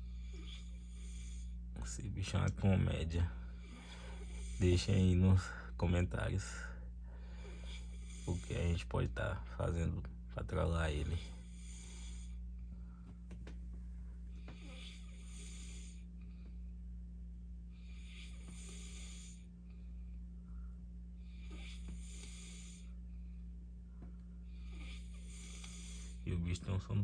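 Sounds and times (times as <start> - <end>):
man snoring: 0.0 - 5.6, 6.2 - 8.9, 10.8 - 12.4, 14.4 - 16.0, 17.7 - 19.5, 21.2 - 23.0, 24.5 - 26.4
steady low hum: 0.0 - 27.0.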